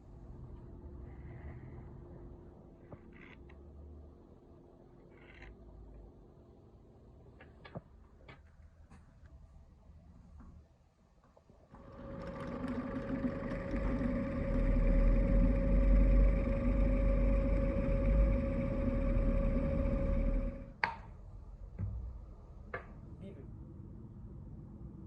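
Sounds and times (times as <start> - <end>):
small electric motor humming: 11.8 - 20.8.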